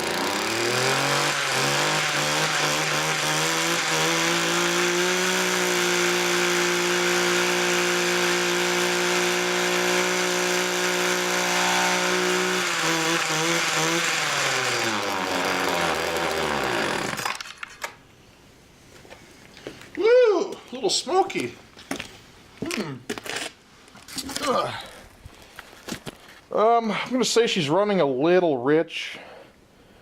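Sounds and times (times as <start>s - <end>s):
string trimmer engine running rough: 0.0s - 17.5s.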